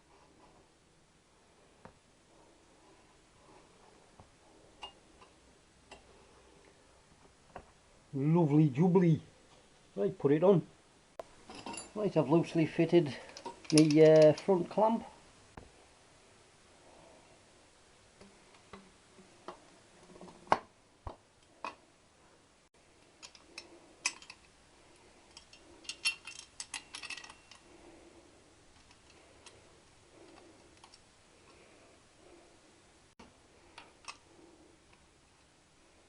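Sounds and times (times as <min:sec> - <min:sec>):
metallic clicks of hardware handled: 0:13.3 - 0:14.5.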